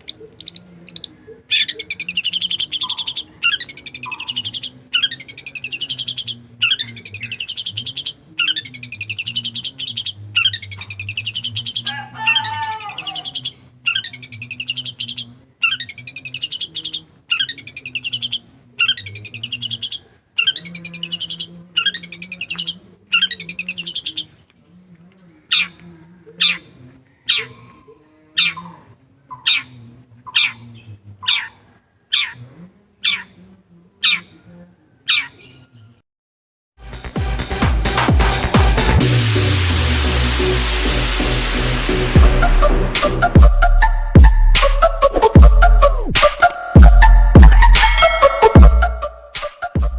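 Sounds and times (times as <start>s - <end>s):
shrike sharp downward-slurred notes: 36.8s - 49.2s
shrike harsh rasping notes: 36.8s - 49.9s
shrike lower clear call: 41.9s - 49.9s.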